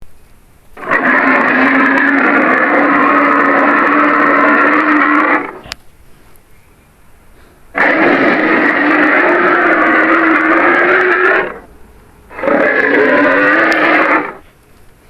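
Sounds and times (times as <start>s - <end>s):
creature roar: 0.8s - 5.7s, 7.8s - 11.7s, 12.3s - 14.4s.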